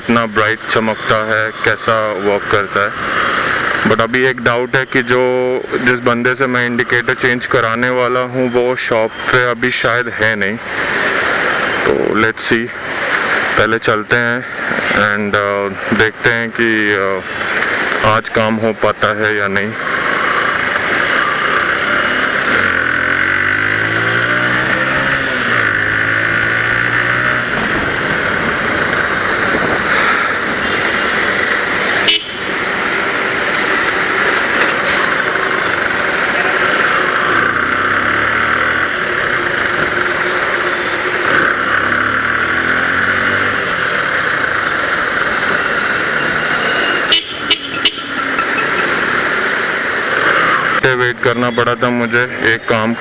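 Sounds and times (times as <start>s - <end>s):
motorcycle engine: 0.0s - 7.4s, 19.7s - 50.8s
wind and road noise: 0.0s - 53.0s.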